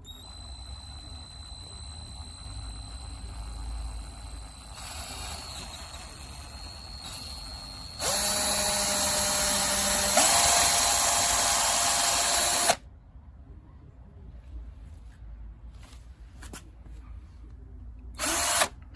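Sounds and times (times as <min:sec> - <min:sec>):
cordless drill motor whining: 0:00.0 - 0:12.8, 0:18.2 - 0:18.8.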